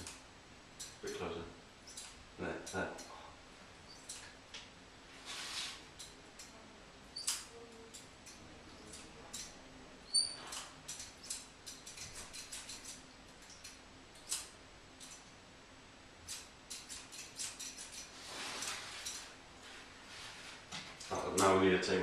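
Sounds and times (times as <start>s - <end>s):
high squeak: 10.1s - 10.6s.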